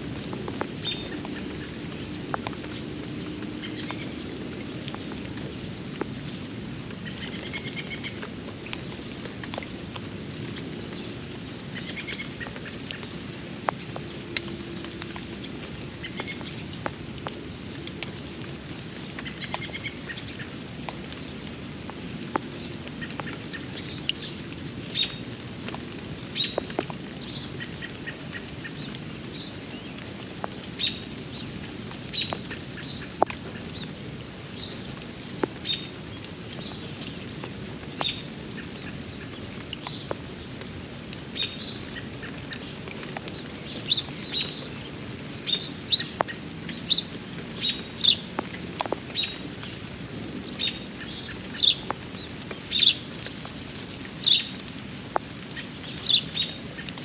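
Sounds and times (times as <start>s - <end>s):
steady rain falling: 0.0s - 57.0s
birds chirping: 50.4s - 53.1s.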